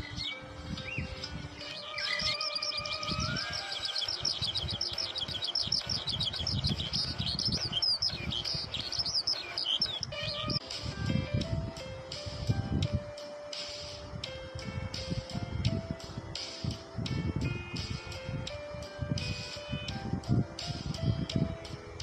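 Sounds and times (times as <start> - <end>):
small bird chirping: 0.0 - 10.6
background music: 0.0 - 22.0.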